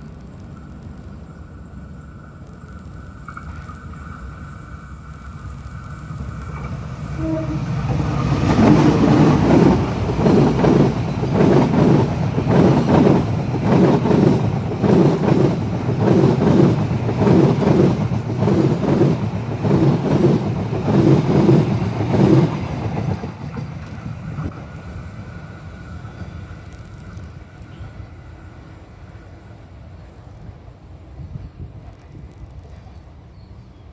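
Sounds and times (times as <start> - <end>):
train passing at speed: 0.0 - 33.9
wheels clacking over rail joints: 5.2 - 24.9.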